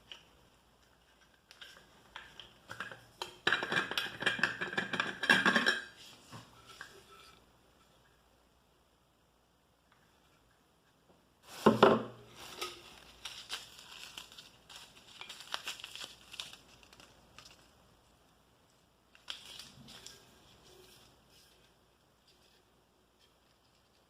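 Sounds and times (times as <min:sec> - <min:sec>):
plastic packaging crinkling: 0:11.4 - 0:18.1, 0:19.1 - 0:21.1.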